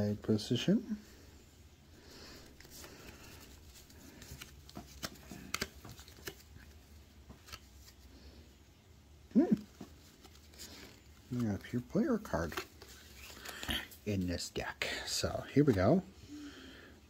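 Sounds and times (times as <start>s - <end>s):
trading cards clicking and tapping: 4.1s - 6.4s.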